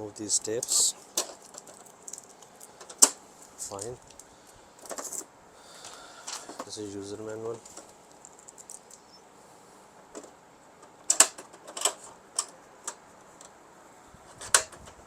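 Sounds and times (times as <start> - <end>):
items tapping and clicking: 0.5 - 5.2, 7.6 - 9.1.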